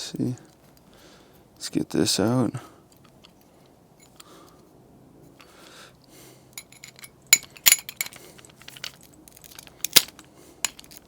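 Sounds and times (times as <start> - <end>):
light metal clinks and clicks: 2.9 - 4.3, 6.6 - 11.0.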